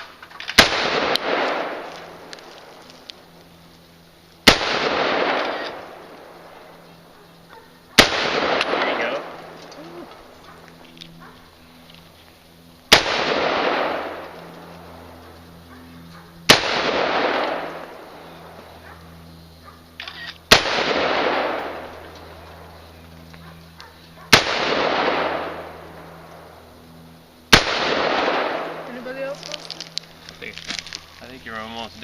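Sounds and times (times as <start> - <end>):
rifle shots with echo: 0.0 - 2.3, 4.4 - 6.5, 7.9 - 9.7, 12.9 - 14.3, 16.4 - 18.6, 20.5 - 22.0, 24.2 - 26.0, 27.5 - 29.2.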